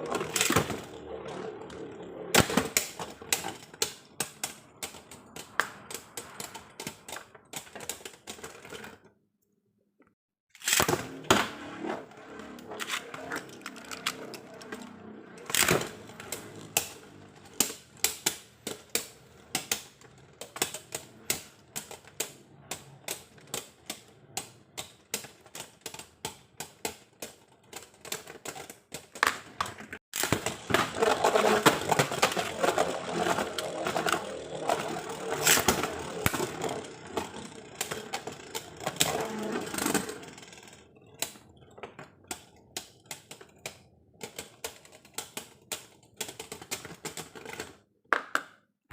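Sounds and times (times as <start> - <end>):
rattling and scraping: 30.2 - 40.3.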